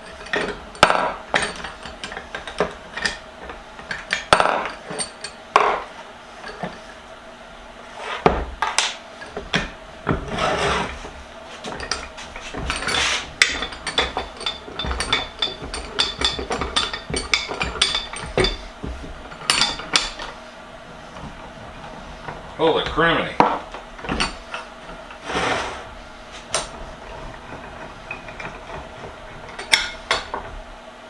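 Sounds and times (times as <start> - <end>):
metal tools clanking on a vise: 0.0 - 7.0, 8.0 - 30.8
rasping metal scrapes: 10.1 - 22.8, 24.4 - 30.4.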